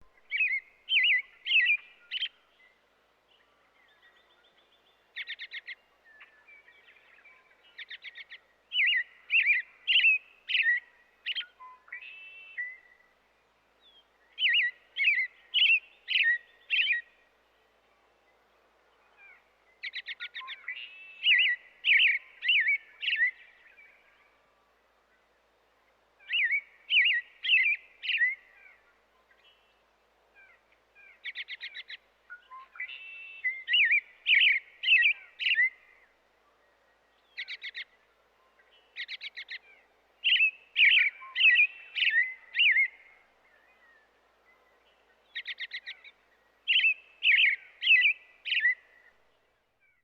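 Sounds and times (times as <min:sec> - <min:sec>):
robin singing: 0:00.1 - 0:13.0, 0:13.8 - 0:17.3, 0:19.1 - 0:24.2, 0:26.2 - 0:29.8, 0:30.4 - 0:50.0.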